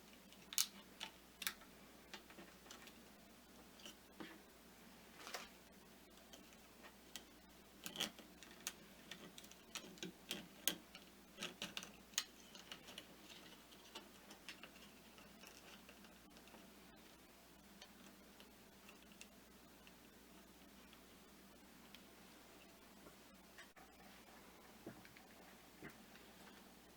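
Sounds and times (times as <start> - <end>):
plastic parts clicking and tapping: 0.1 - 3.0, 6.2 - 16.7.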